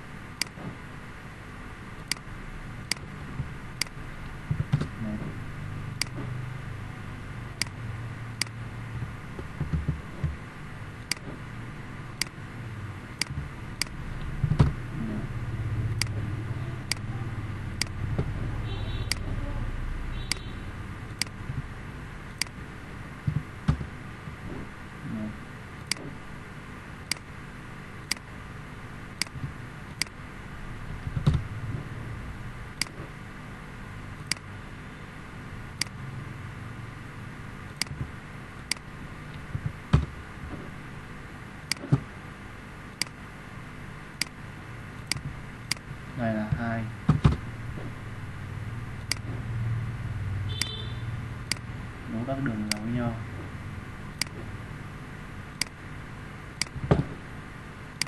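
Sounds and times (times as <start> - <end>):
low rumbling hum: 0.0 - 58.0
sharp ticks: 16.8 - 17.1, 19.0 - 19.3, 27.1 - 27.3, 49.0 - 49.3, 50.5 - 51.7.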